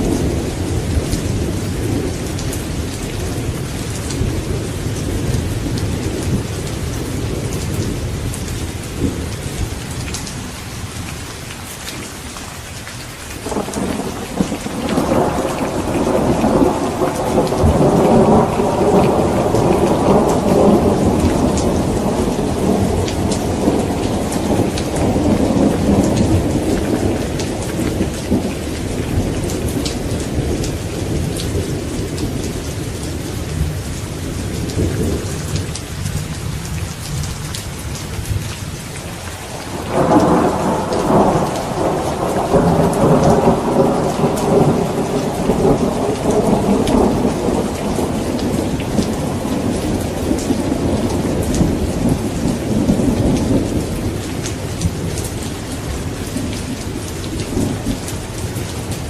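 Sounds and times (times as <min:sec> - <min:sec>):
steady rain: 0:00.0 - 0:59.0
rolling thunder: 0:13.4 - 0:36.4, 0:39.4 - 0:58.1.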